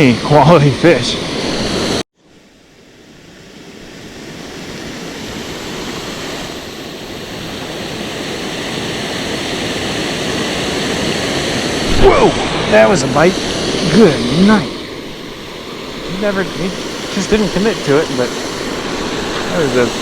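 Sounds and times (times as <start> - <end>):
waterfall rushing: 10.3 - 20.0.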